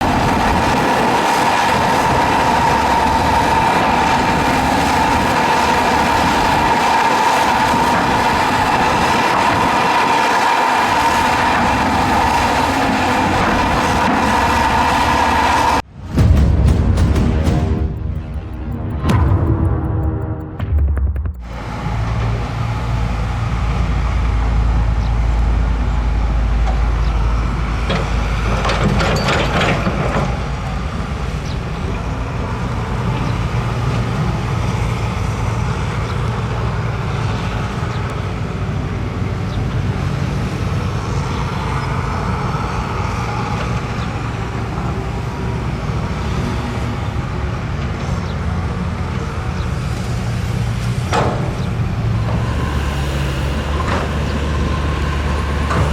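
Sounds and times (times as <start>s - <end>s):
diesel machinery engine drone: 0.0s - 55.9s
loud bursts of machine noise: 49.9s - 55.9s.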